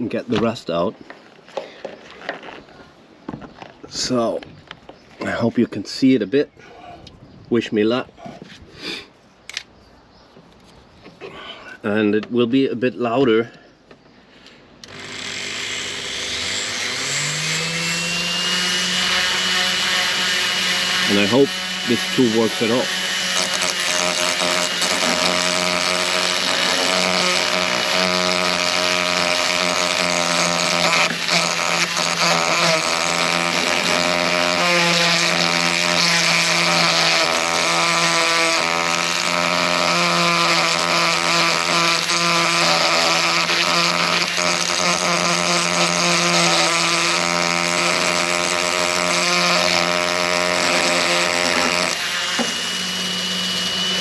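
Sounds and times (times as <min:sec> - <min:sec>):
rotary tool whining: 0:14.8 - 0:54.0.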